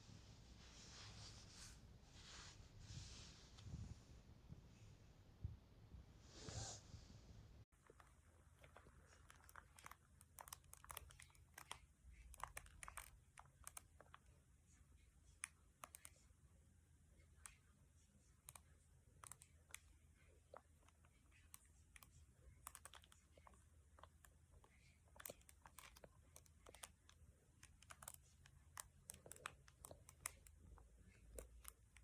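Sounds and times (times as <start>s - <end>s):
belly clicks and crackles: 7.7s - 14.4s, 18.5s - 32.0s.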